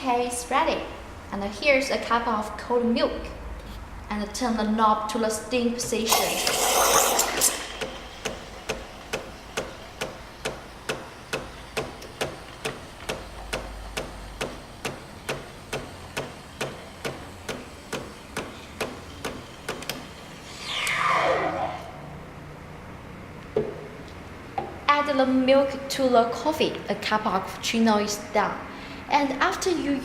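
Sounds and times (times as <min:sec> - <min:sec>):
steam hissing: 0:06.0 - 0:21.8.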